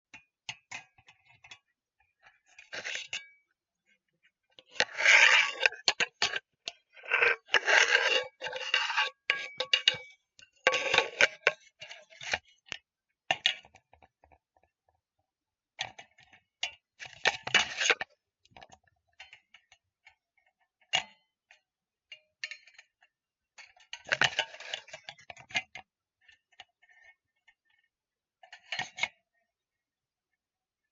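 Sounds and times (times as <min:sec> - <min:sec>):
cooking pots clinking and scraping: 0:04.6 - 0:06.4, 0:07.0 - 0:12.4.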